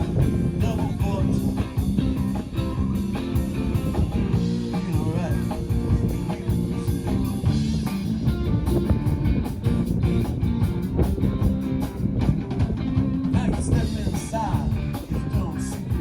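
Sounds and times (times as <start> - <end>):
electric guitar: 0.0 - 16.0
steady drum beat: 0.0 - 16.0.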